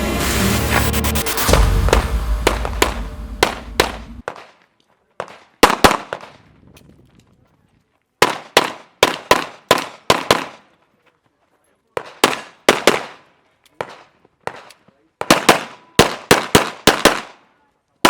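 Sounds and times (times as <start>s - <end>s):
background music: 0.0s - 4.2s
pistol shots echoing: 1.8s - 4.5s, 12.0s - 13.2s, 13.8s - 17.4s.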